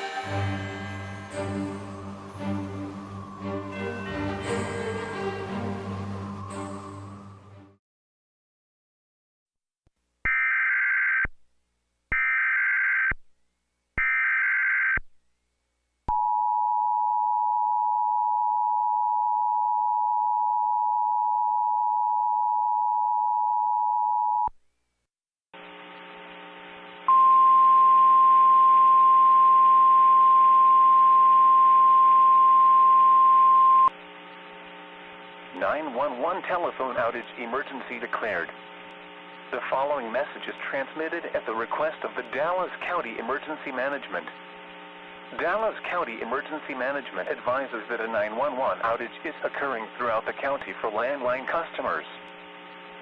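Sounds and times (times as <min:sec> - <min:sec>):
low buzzing hum: 0:25.6 - 0:45.6
two-tone attention signal: 0:27.1 - 0:33.9
single steady tone: 0:27.1 - 0:34.0.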